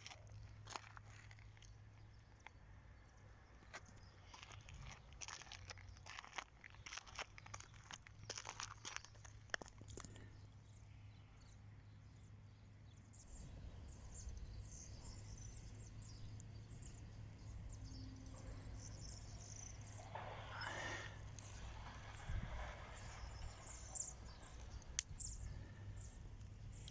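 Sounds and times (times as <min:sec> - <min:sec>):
steady low hum: 0:09.4 - 0:26.9
high chirping calls: 0:13.1 - 0:26.9.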